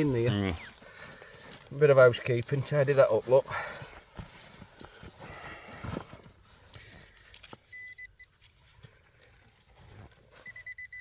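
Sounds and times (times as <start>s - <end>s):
metal detector beeping: 7.6s - 8.4s, 10.4s - 11.0s.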